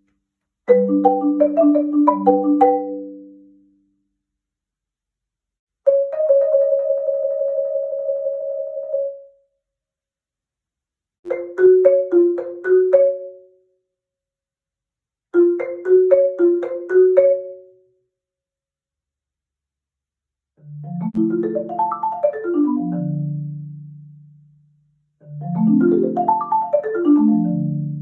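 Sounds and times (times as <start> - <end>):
marimba ringtone: 0.7 - 3.3, 11.3 - 13.4, 15.4 - 17.7, 21.1 - 23.4, 25.4 - 28.0.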